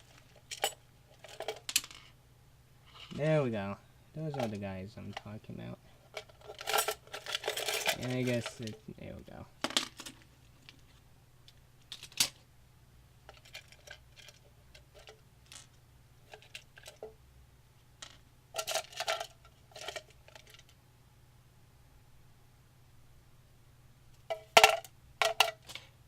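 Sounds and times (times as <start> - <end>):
small metal parts clinking: 0.0 - 2.2, 6.1 - 8.8, 11.9 - 12.4, 13.3 - 17.1, 18.0 - 20.8, 24.3 - 25.8
faint low hum: 0.0 - 26.0.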